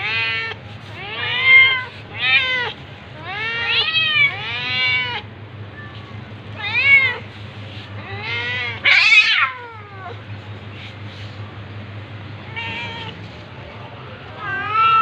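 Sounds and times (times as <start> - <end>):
cats meowing and yowling: 0.0 - 10.3, 12.5 - 13.2, 14.3 - 15.0.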